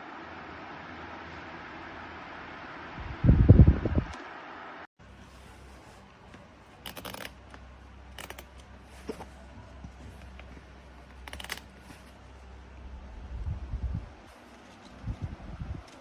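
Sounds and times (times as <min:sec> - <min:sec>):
clicking and rustling: 0:06.2 - 0:12.2.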